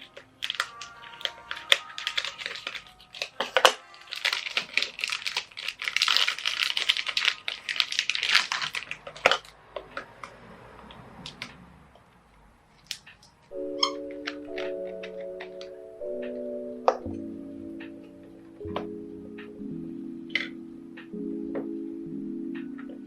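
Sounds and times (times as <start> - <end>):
computer keyboard typing: 0.0 - 9.6, 12.8 - 17.2.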